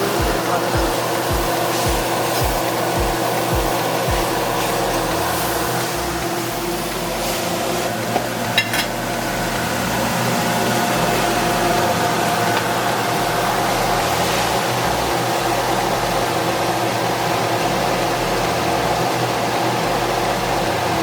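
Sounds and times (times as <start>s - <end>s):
vegetables sizzling in hot oil: 0.0s - 9.2s, 12.3s - 14.9s.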